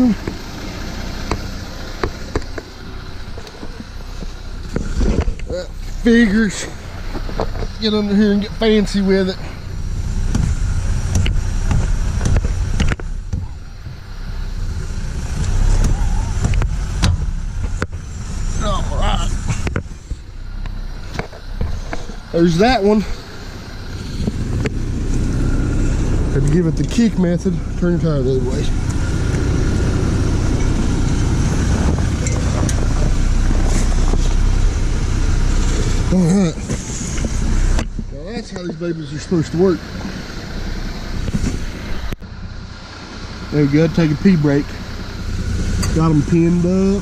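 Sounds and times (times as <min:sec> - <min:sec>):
steady low rumble: 0:00.0 - 0:47.0
vehicle engine idling: 0:00.0 - 0:47.0
sharp metal knocks and clicks: 0:10.2 - 0:13.5
wind on microphone: 0:28.8 - 0:34.8.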